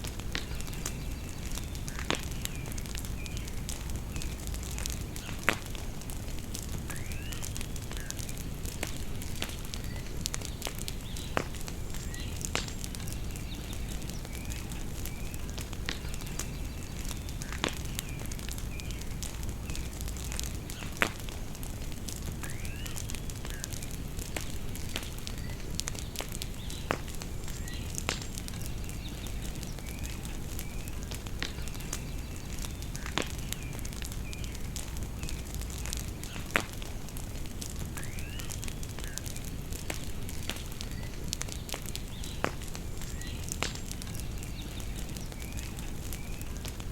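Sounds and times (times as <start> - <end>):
birds chirping: 0.0 - 46.9
bonfire crackling and popping: 0.0 - 46.9.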